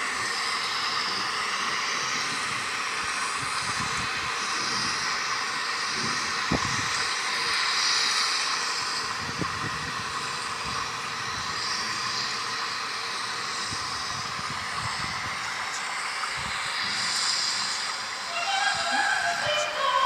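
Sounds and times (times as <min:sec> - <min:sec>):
rain hissing over loudspeakers: 0:00.0 - 0:20.0.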